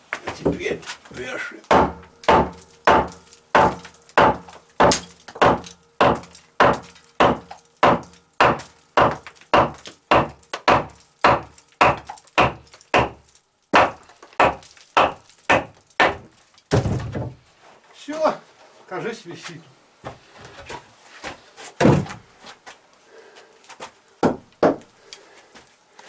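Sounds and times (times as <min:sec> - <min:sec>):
hammer driving nails into wood: 0:01.7 - 0:13.2, 0:13.8 - 0:17.1.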